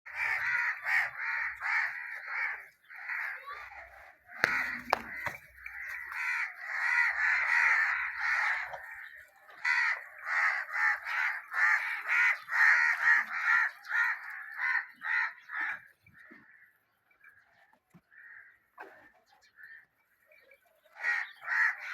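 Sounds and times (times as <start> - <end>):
birds calling: 0.1 - 21.9
single knock: 4.4 - 5.4.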